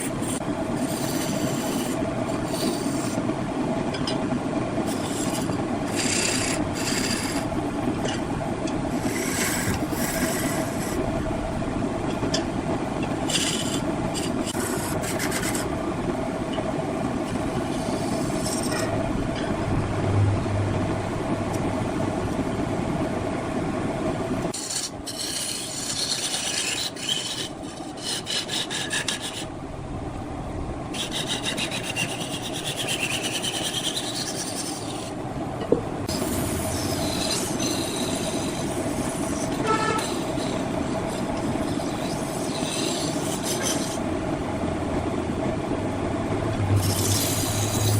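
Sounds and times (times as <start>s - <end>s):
tool scraping spinning wood: 0.0s - 3.3s, 4.8s - 8.2s, 8.8s - 11.2s, 13.0s - 15.8s, 16.6s - 20.9s, 24.5s - 29.5s, 30.9s - 35.2s, 36.0s - 44.2s, 46.6s - 47.9s
wood lathe hum: 0.0s - 3.3s, 4.8s - 7.6s, 8.9s - 11.4s, 13.0s - 15.9s, 17.4s - 22.4s, 30.9s - 35.2s, 36.0s - 44.7s, 46.0s - 47.9s.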